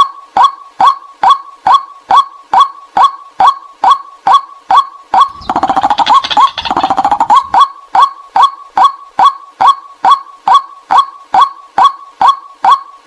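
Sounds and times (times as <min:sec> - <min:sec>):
rapid bird chattering: 0:05.2 - 0:07.6.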